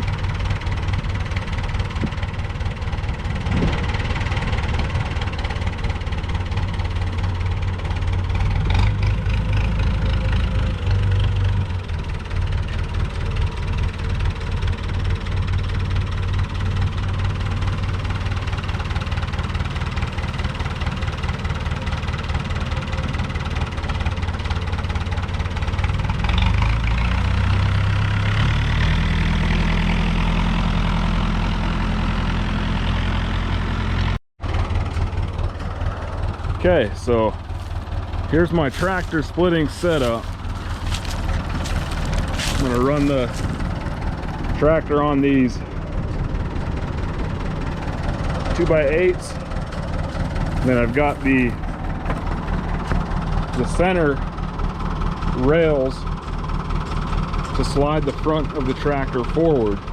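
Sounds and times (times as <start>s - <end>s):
tractor diesel engine idling: 0.0s - 59.9s.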